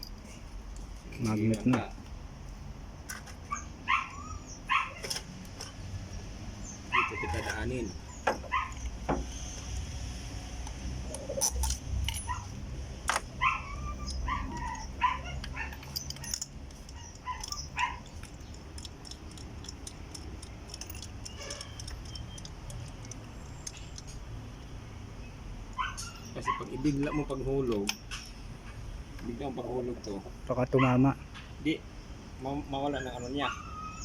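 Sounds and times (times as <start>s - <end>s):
dog yipping and whimpering: 3.4s - 5.1s, 6.8s - 8.9s, 12.2s - 12.6s, 13.3s - 16.3s, 16.9s - 18.2s, 25.8s - 27.4s, 33.0s - 34.0s
hand tools clicking and tapping: 10.6s - 24.5s, 25.8s - 28.3s.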